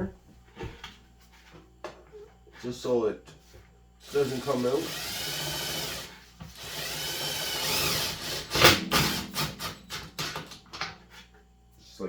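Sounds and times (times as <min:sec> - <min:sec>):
power drill driving screws: 0:04.0 - 0:10.6.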